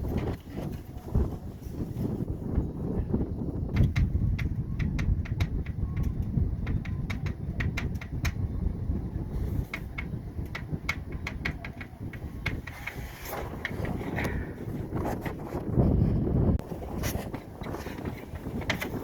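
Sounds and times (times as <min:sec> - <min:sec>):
clicking inside air duct: 0:09.7 - 0:14.6.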